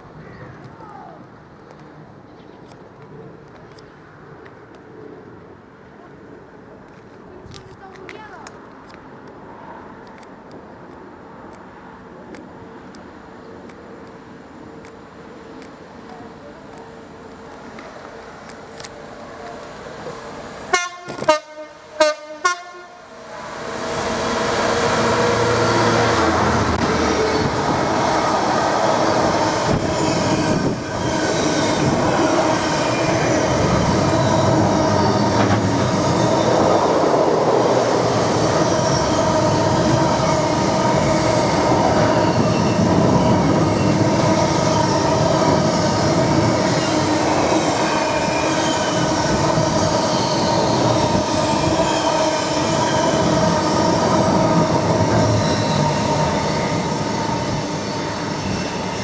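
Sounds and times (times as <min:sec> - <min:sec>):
freight train wheels on rail: 0:00.0 - 0:59.0
train horn blasts: 0:20.7 - 0:23.0.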